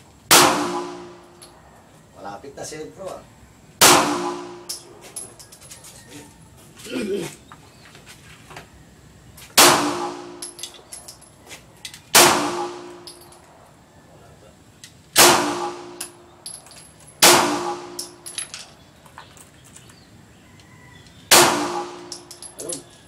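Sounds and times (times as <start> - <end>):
gunshots: 0.3 - 1.2, 3.8 - 4.7, 9.6 - 10.4, 12.1 - 13.0, 15.2 - 16.0, 17.2 - 18.1, 21.3 - 22.2.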